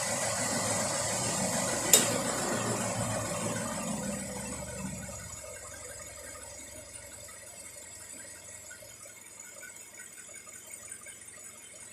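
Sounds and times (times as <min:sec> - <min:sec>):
engine running: 0:00.0 - 0:09.1
car engine idling hum: 0:00.1 - 0:11.9.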